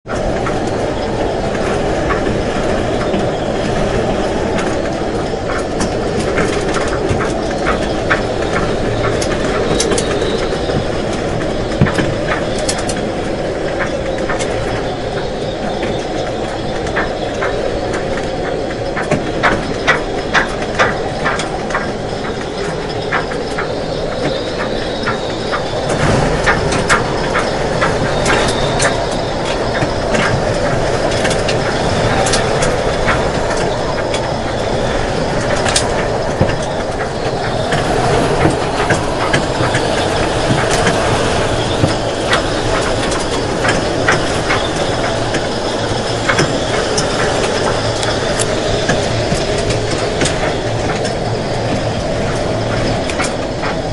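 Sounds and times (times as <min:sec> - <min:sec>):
high wind rushing: 0:00.0 - 0:53.9
hull and fittings rattling: 0:00.0 - 0:53.9.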